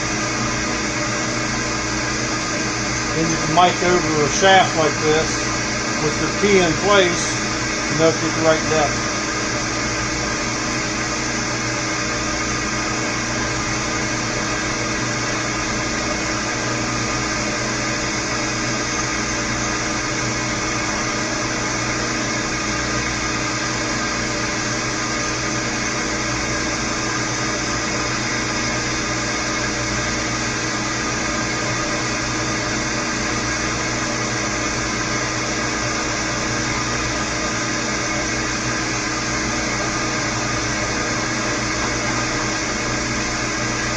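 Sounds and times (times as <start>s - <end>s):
milling machine running: 0.0s - 43.9s.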